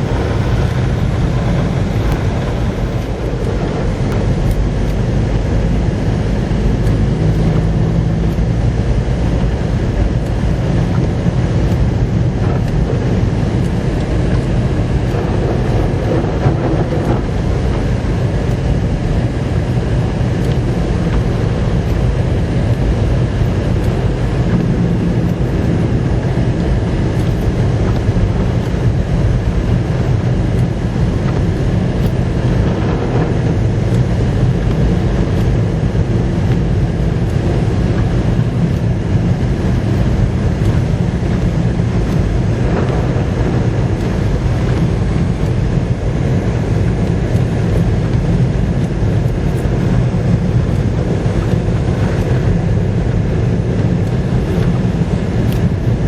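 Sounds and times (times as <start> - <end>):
wind blowing across microphone: 0.0 - 56.0.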